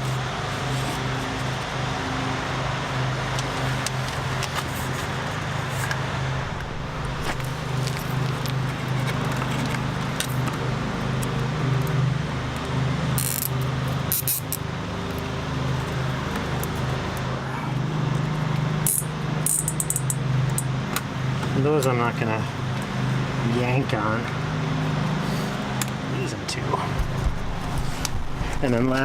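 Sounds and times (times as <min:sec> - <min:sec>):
steady mechanical hum: 0:00.0 - 0:29.0.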